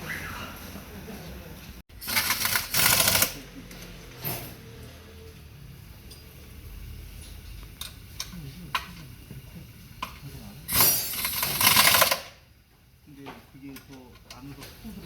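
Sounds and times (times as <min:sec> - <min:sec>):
loud rattling burst: 0:02.0 - 0:03.4, 0:10.7 - 0:12.4.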